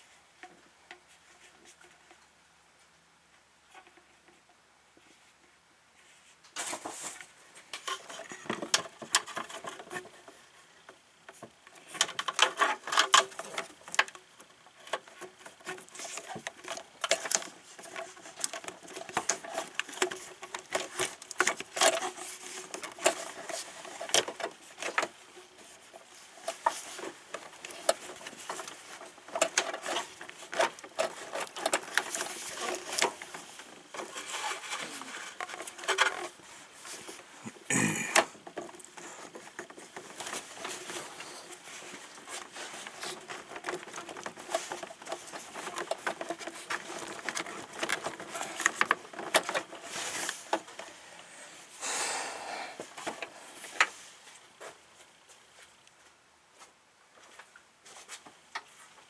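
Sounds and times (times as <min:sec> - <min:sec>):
hands tapping and rubbing hose: 0:06.5 - 0:51.0.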